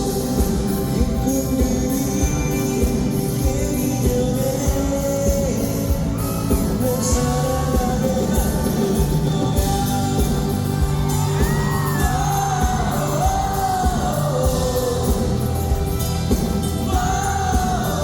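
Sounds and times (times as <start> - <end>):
live band with drum beat: 0.0 - 18.0
audience shouting: 10.7 - 15.1.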